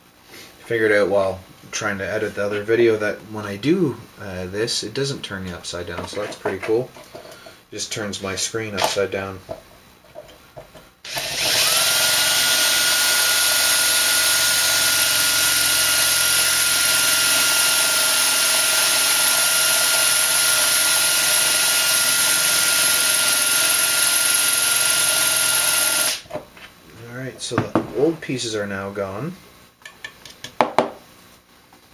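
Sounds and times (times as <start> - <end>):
power tool motor whining: 11.1 - 26.2.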